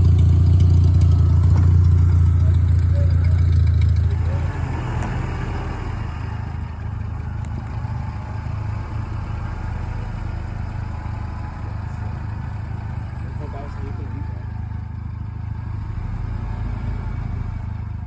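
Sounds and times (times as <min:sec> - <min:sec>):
small car engine running: 0:00.0 - 0:18.0.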